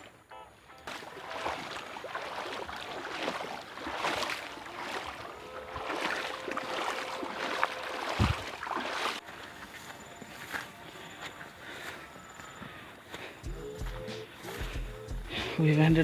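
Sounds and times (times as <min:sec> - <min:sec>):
footsteps through undergrowth: 0:00.8 - 0:16.0
heavy thump: 0:08.2 - 0:08.5.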